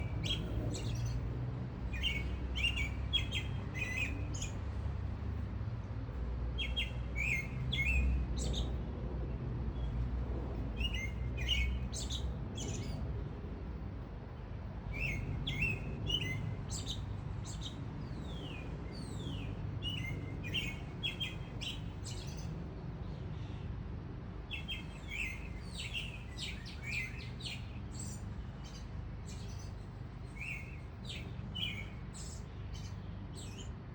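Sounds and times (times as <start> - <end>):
low background rumble: 0.0 - 6.5
songbirds singing: 0.0 - 33.9.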